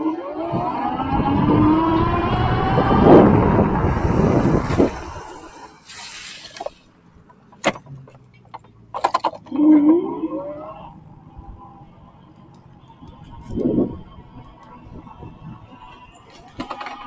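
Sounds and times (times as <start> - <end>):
electric bike motor whining: 0.0 - 5.8
road noise: 0.0 - 17.0
rushing wind: 0.4 - 6.7, 13.0 - 16.9.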